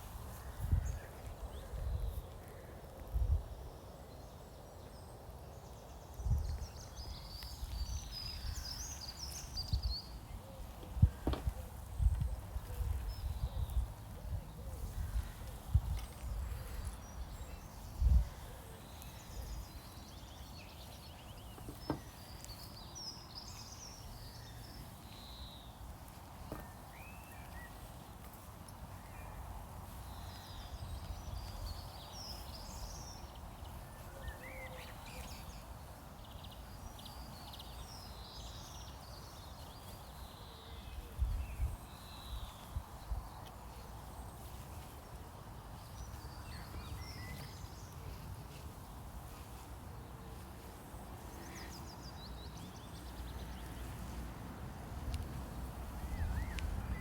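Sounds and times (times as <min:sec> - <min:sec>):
birds chirping and trilling: 0:45.8 - 0:49.4.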